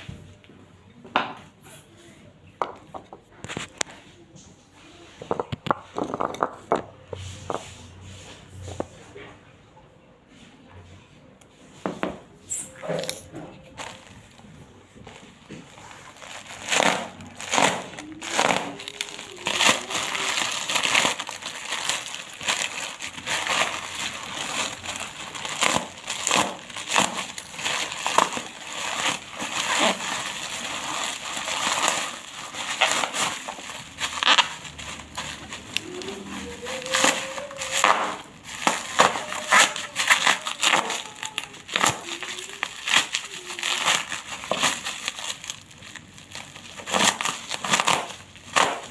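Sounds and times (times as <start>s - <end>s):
plastic packaging crinkling and tearing: 12.5s - 48.9s.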